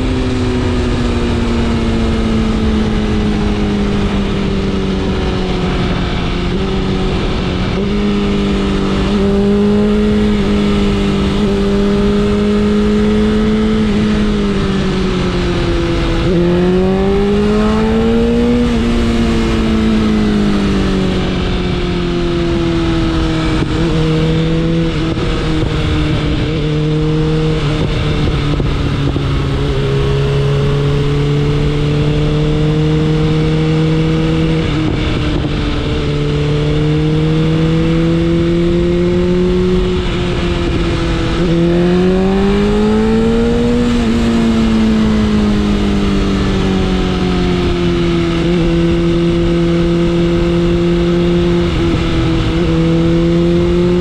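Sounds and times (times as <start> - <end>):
motorcycle engine running: 0.0 - 54.0
rush of wind: 0.0 - 54.0.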